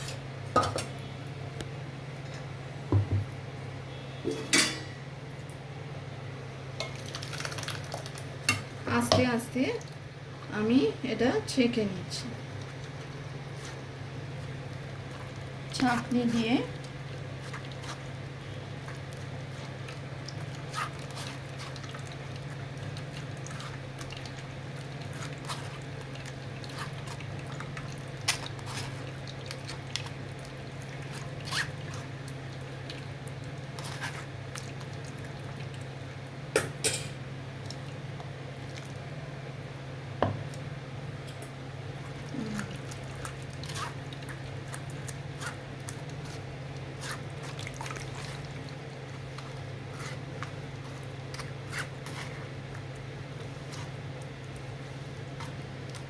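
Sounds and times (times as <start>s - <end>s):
wet squishing and dripping: 7.0s - 8.4s, 16.7s - 36.2s, 37.6s - 39.1s, 41.3s - 56.0s.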